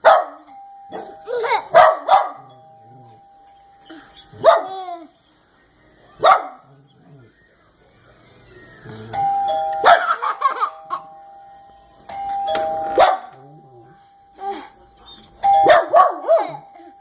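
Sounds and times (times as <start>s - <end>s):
dogs barking: 0.0s - 3.2s, 4.3s - 4.9s, 6.2s - 6.8s, 9.8s - 10.4s, 12.9s - 13.4s, 15.6s - 16.7s
doorbell ding-dong chime: 9.2s - 10.0s, 10.6s - 14.4s, 15.4s - 15.9s.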